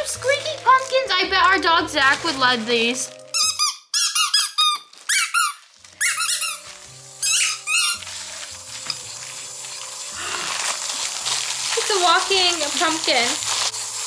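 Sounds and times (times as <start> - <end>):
squeaky rubber toys squeezed: 3.3 - 8.1
background music held notes: 5.8 - 14.0.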